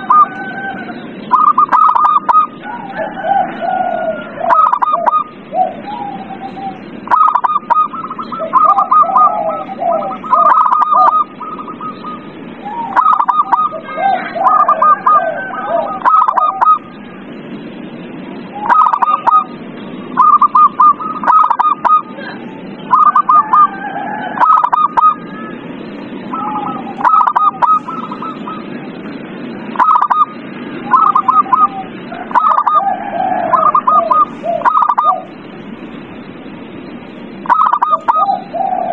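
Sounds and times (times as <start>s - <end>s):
doves cooing: 0.0s - 17.1s, 18.3s - 38.9s
low background noise: 0.0s - 38.9s.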